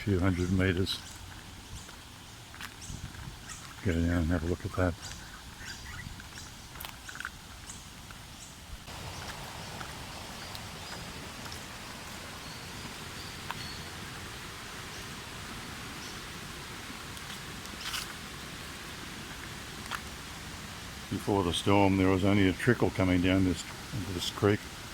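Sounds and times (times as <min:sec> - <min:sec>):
creek water rushing: 0:00.0 - 0:24.9
high bird chirps: 0:05.0 - 0:07.8, 0:08.4 - 0:14.0.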